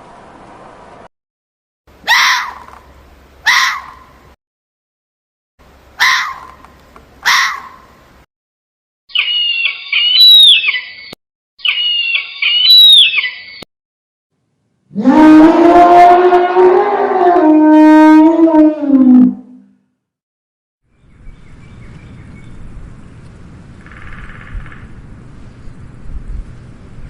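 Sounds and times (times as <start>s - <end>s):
high shifting animal calls: 2.1s - 2.8s, 3.4s - 4.1s, 6.0s - 6.6s, 7.2s - 7.8s, 9.1s - 10.9s, 11.6s - 13.4s
sharp falling animal calls: 2.1s - 2.8s, 6.0s - 6.6s.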